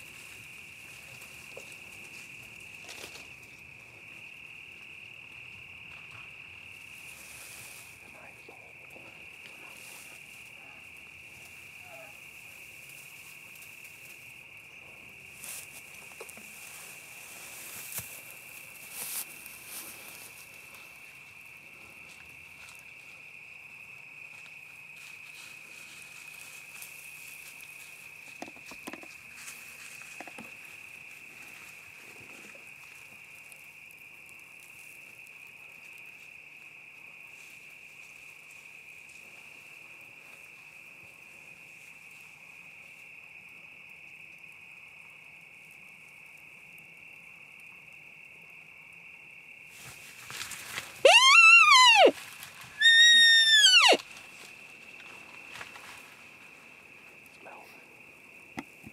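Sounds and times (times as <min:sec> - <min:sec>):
high-pitched insect chorus: 0:00.0 - 0:58.9
soft rustles and clicks: 0:49.7 - 0:51.2, 0:53.9 - 0:57.4.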